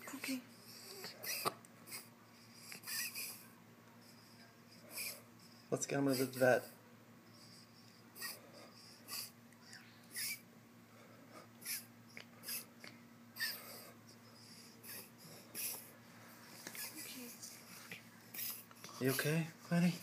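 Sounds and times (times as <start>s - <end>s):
faint steady hum: 0.0s - 20.0s
animal sniffing: 14.6s - 19.4s.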